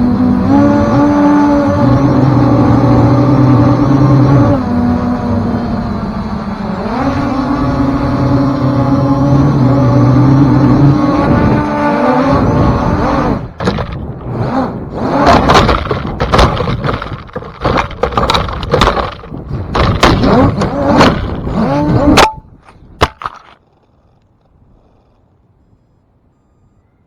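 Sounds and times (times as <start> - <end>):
wind buffeting microphone: 0.0 - 25.1
knocks cracks and scrapes: 13.5 - 23.9.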